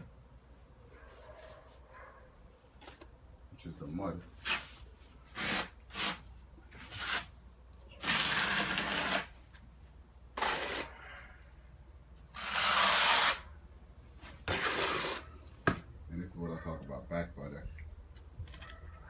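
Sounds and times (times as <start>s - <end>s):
trowel scraping mortar: 5.3s - 7.3s, 8.0s - 9.4s, 10.4s - 11.0s, 12.4s - 13.4s, 14.4s - 15.3s.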